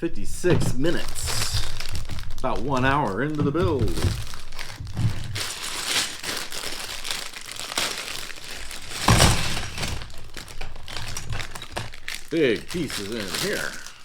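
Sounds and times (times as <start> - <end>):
plastic bag crinkling: 0.1 - 14.0.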